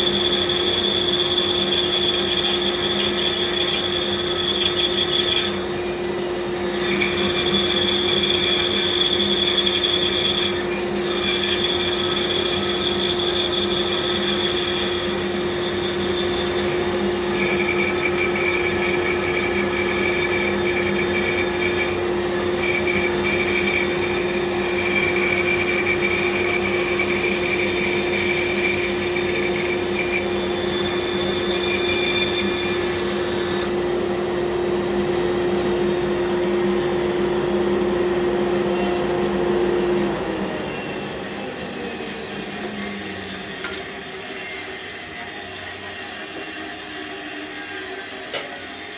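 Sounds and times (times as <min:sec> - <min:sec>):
bandsaw cutting wood: 0:00.0 - 0:33.8.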